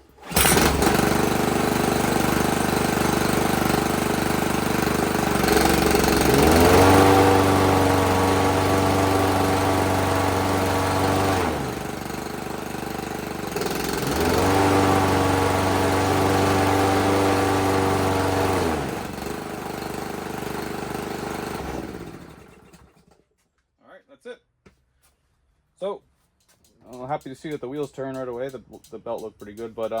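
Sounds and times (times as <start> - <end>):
lawn mower engine running: 0.0 - 23.0.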